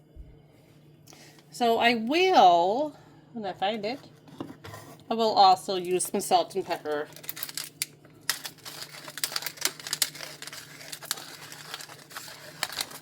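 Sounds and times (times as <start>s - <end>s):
pepper grinder clicking and rattling: 7.1s - 13.0s.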